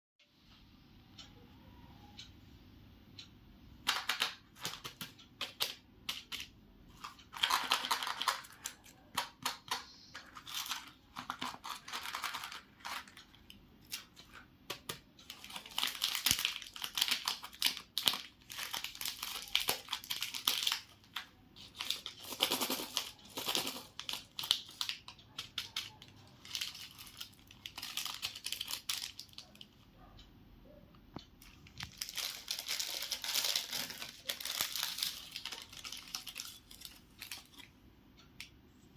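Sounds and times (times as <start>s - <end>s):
candy wrappers crinkling and tearing: 3.9s - 29.7s, 31.4s - 37.7s.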